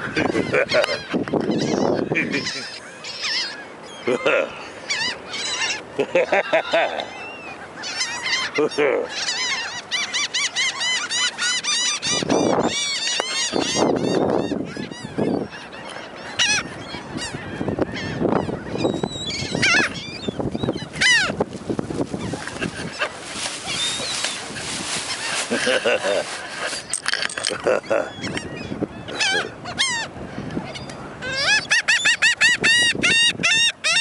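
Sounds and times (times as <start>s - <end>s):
gulls calling: 0.0s - 34.0s.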